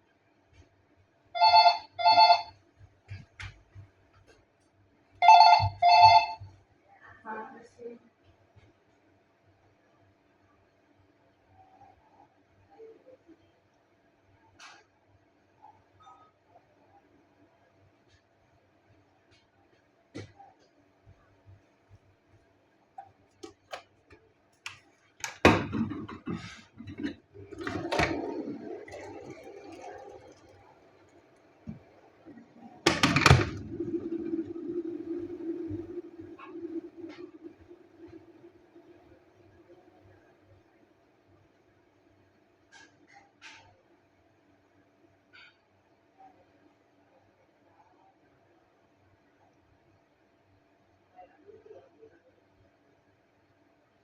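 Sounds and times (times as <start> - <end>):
phone ringing: 1.4 - 2.5, 5.2 - 6.4, 26.8 - 35.9.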